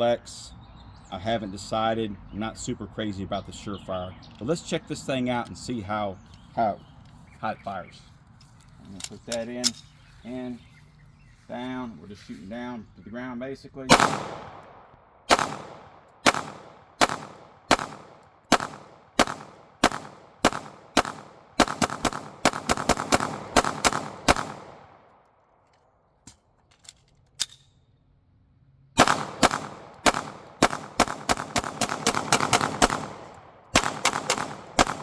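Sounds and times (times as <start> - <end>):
pistol gunshots: 13.9 - 25.1, 29.0 - 35.0.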